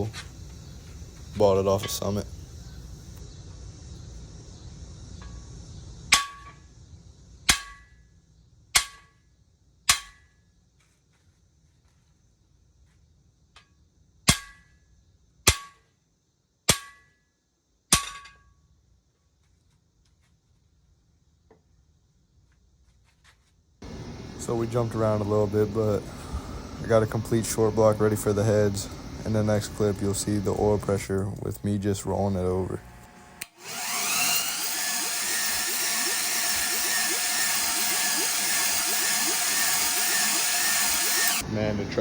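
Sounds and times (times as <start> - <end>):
hammer striking metal tool: 9.9 - 10.2, 16.7 - 17.1.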